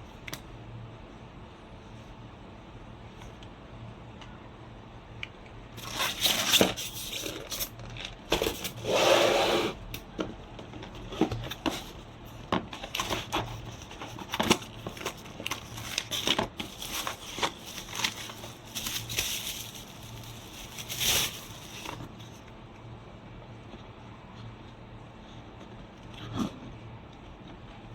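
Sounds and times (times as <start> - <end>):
plastic packaging crinkling: 5.8 - 8.6, 12.8 - 22.2.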